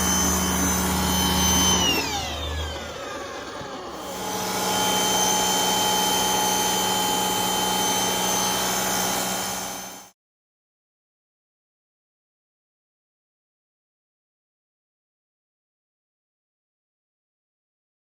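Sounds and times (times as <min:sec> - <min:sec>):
pressure washer whining: 0:00.0 - 0:10.1.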